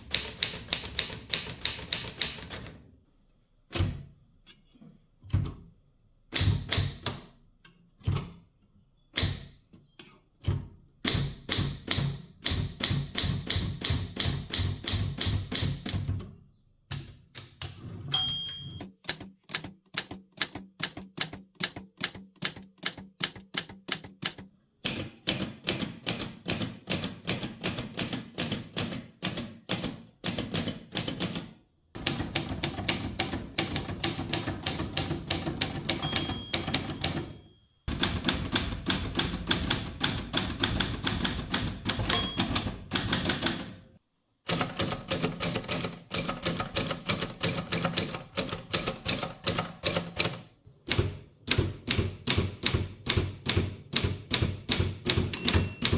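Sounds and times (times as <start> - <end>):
manual typewriter clacking: 0.0 - 2.7, 18.5 - 43.8, 44.5 - 55.9.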